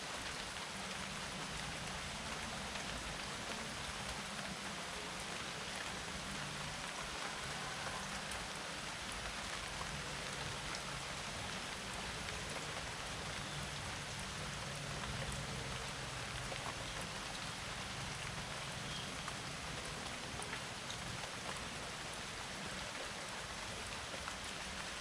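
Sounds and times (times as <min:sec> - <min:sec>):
rain pattering: 0:00.0 - 0:25.0.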